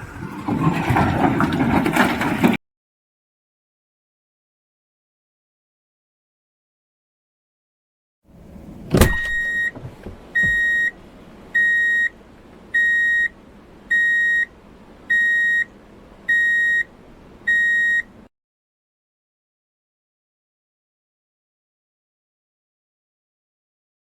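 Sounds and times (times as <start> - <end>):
low mechanical rumble: 8.3 - 18.3
vehicle warning beeper: 9.0 - 9.8, 10.4 - 11.0, 11.6 - 14.5, 15.1 - 15.7, 16.3 - 16.9, 17.5 - 18.2.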